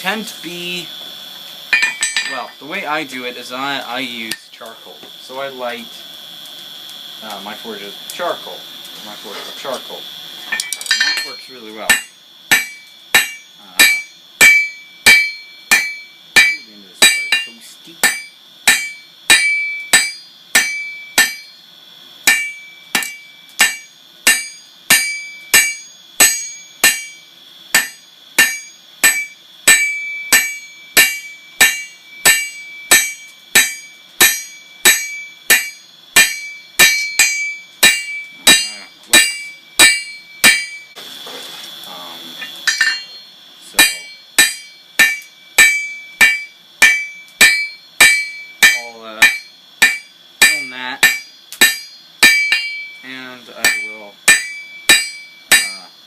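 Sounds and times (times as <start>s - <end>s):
steady hiss: 0.0s - 56.0s
hammer striking steel on anvil: 1.7s - 2.5s, 10.5s - 21.6s, 22.2s - 41.0s, 42.4s - 55.9s.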